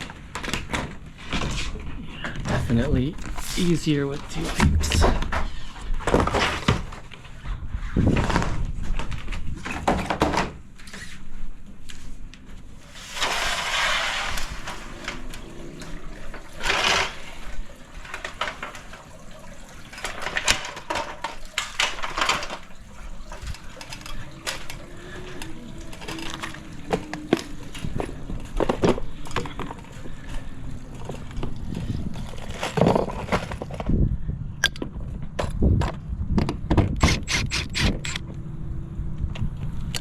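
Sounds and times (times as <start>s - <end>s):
rushing scrape: 12.8s - 17.6s.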